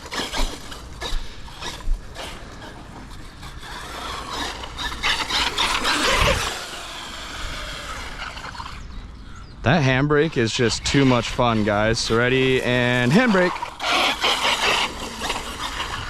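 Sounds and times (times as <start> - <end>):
drivetrain gear whir: 0.0 - 9.3, 9.9 - 16.0
tyres scrabbling over concrete: 10.7 - 16.0.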